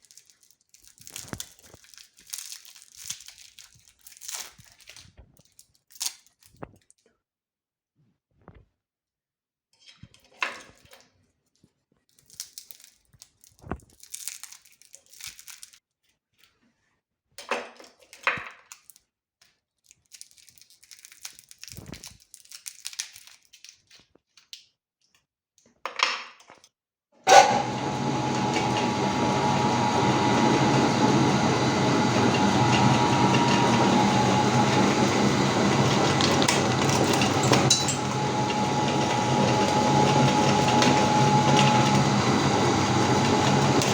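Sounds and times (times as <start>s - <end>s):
electric meat grinder running: 27.3s - 43.9s.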